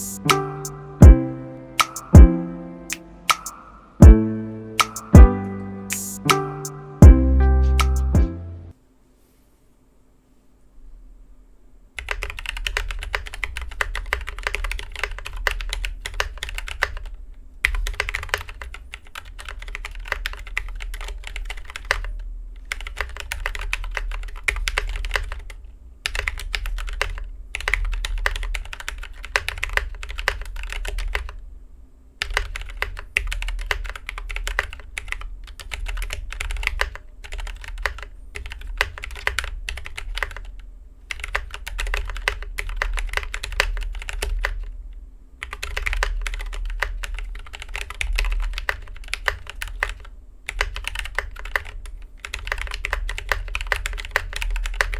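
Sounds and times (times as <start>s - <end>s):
mechanical keyboard typing: 12.0s - 31.4s, 32.2s - 44.7s, 45.4s - 54.9s.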